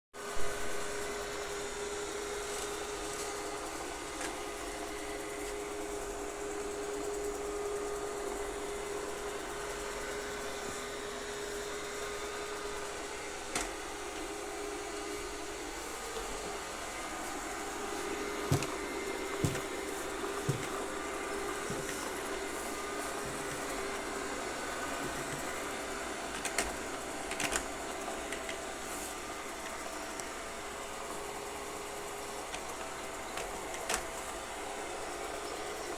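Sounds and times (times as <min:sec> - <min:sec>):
robot vacuum cleaner running: 0:00.2 - 0:35.9.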